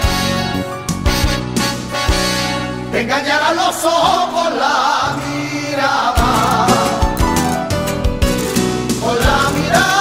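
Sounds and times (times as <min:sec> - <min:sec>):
festive song instrumental: 0:00.0 - 0:10.0
singing voices: 0:02.9 - 0:07.5, 0:08.9 - 0:10.0.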